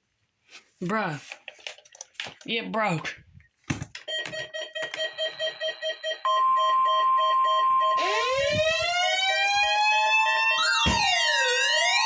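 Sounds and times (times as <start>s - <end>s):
steady loud alarm tone: 4.2s - 12.0s
rising siren-like wail: 7.8s - 12.0s.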